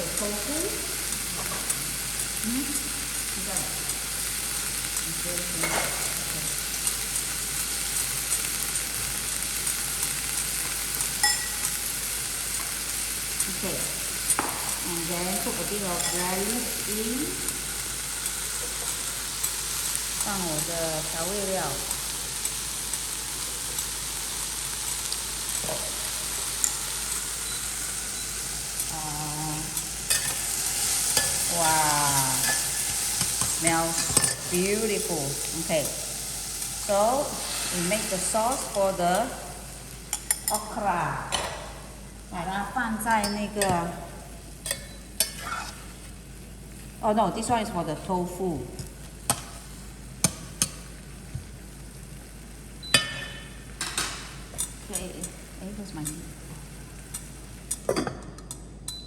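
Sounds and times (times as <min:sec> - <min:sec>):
food sizzling in a pan: 0:00.0 - 0:58.8
utensil clicking against pan: 0:57.1 - 0:57.9.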